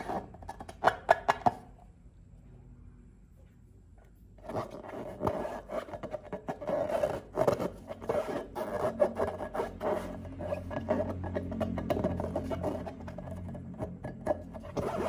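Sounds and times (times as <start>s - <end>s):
quick rubbing and scraping: 0.0s - 1.3s, 4.4s - 15.0s
steady low hum: 0.0s - 15.0s.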